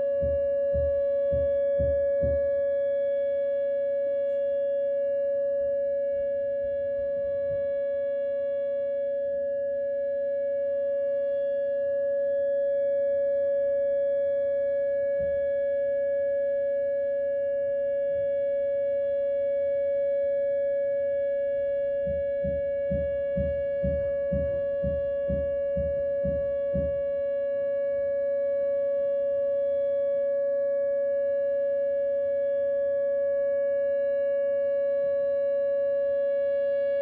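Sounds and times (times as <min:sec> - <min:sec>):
warning siren steady tone: 0:00.0 - 0:37.0
hammering thuds: 0:00.2 - 0:02.5, 0:22.1 - 0:27.0.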